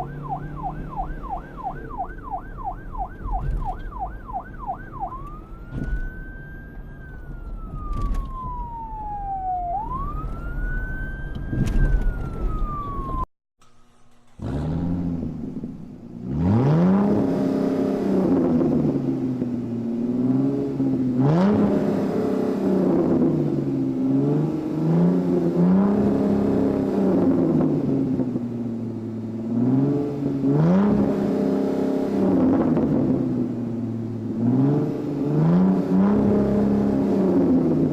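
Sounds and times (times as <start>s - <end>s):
siren wailing: 0.0s - 13.3s
car engine revving: 14.1s - 28.3s, 29.4s - 37.9s.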